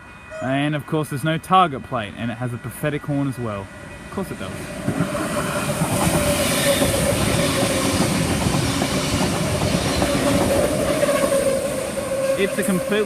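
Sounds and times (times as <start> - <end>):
train whine: 0.0 - 13.0
train wheels clattering over rails: 4.8 - 13.0.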